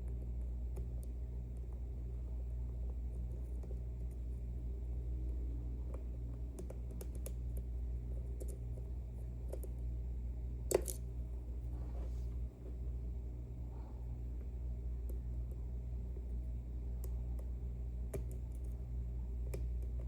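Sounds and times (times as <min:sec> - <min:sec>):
low hum: 0:00.0 - 0:20.0.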